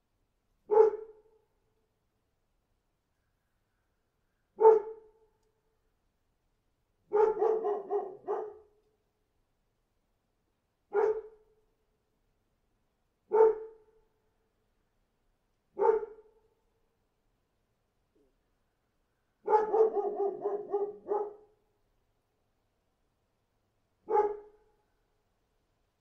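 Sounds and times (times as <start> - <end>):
dog barking: 0.7 - 1.2, 4.6 - 5.2, 7.1 - 8.8, 10.9 - 11.4, 13.3 - 13.9, 15.8 - 16.4, 19.4 - 21.6, 24.0 - 24.6.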